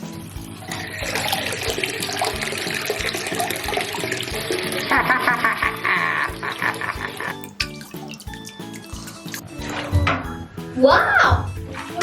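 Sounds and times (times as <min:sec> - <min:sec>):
water gushing: 0:00.0 - 0:09.3
background music with beat: 0:00.0 - 0:12.0.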